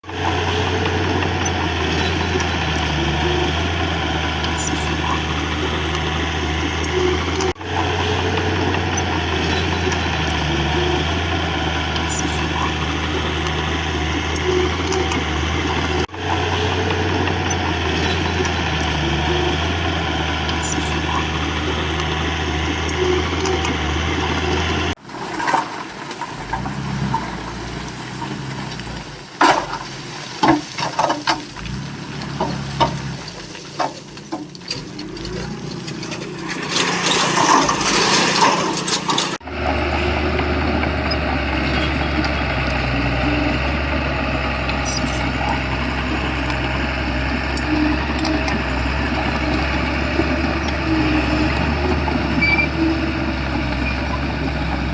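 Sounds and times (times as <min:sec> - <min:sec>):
bulldozer diesel engine running: 0:00.0 - 0:54.9
knocks and clanks: 0:28.2 - 0:39.4.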